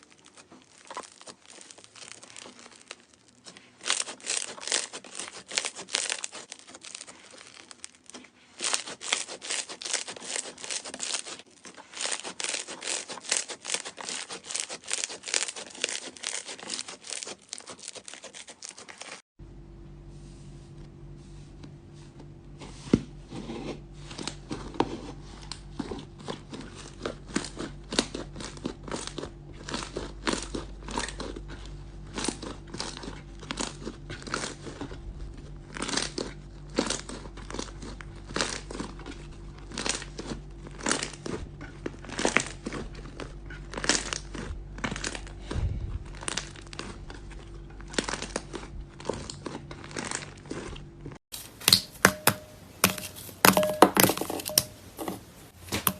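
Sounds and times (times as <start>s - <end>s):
slime crackling and popping: 0.0s - 19.2s, 25.5s - 54.7s
faint hum: 19.4s - 55.9s.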